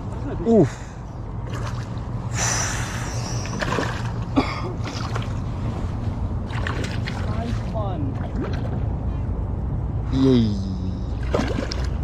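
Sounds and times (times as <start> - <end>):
steady low hum: 0.0 - 12.0
fish splashing in water: 3.4 - 4.2, 6.5 - 8.8, 11.2 - 12.0.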